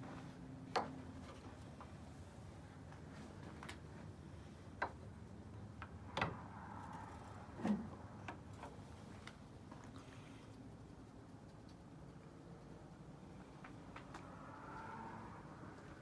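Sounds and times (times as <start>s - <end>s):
distant traffic hum: 5.2s - 9.6s, 12.0s - 16.0s
faint passing vehicle: 6.0s - 8.2s, 13.3s - 16.0s.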